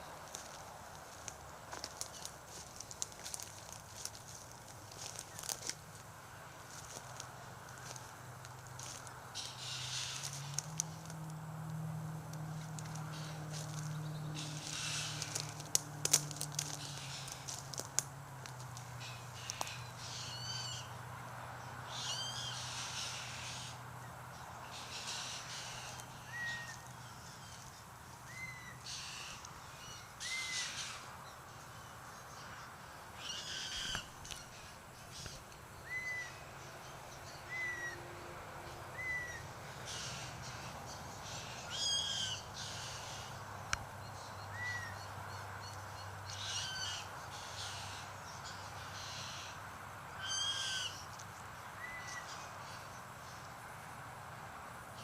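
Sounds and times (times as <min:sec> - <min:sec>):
harsh grating bird calls: 0:08.8 - 0:11.1, 0:12.7 - 0:15.8, 0:16.4 - 0:17.8, 0:18.9 - 0:21.0, 0:21.9 - 0:23.9, 0:24.6 - 0:31.2, 0:31.8 - 0:36.5, 0:38.9 - 0:43.4, 0:46.3 - 0:49.6, 0:50.2 - 0:51.2.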